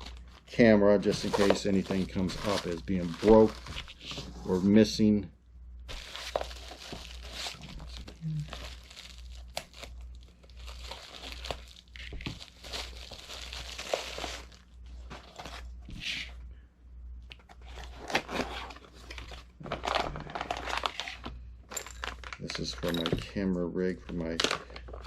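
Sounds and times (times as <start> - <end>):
packaging tearing and crinkling: 5.9 - 14.6, 17.6 - 21.3, 24.1 - 25.0.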